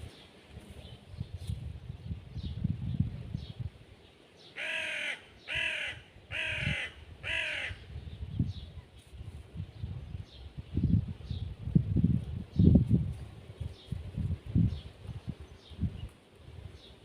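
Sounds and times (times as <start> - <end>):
crow cawing: 4.6 - 7.8.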